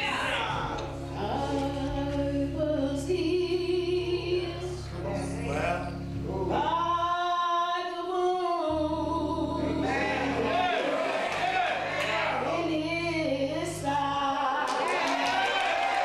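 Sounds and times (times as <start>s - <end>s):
backing music: 0.0s - 16.0s
woman singing: 1.1s - 5.5s, 6.4s - 10.2s, 12.4s - 15.6s.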